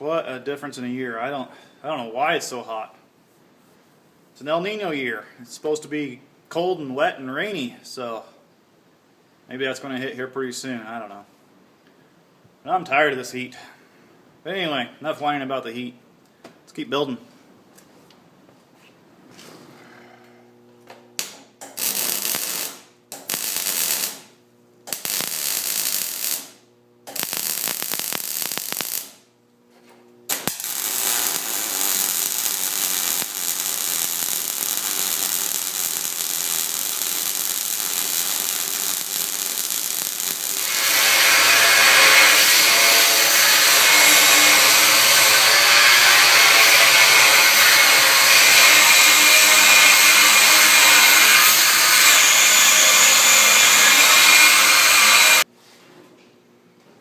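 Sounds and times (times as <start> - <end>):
power tool running: 30.4 - 55.4.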